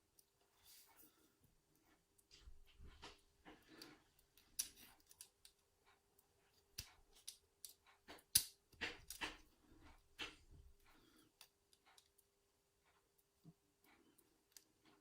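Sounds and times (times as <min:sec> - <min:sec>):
pliers metallic clicks and scrapes: 0:04.6 - 0:05.6.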